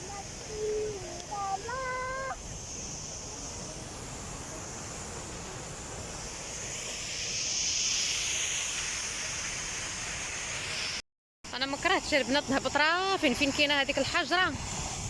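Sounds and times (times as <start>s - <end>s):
sea: 0.0s - 11.0s
wind on microphone: 14.4s - 15.0s.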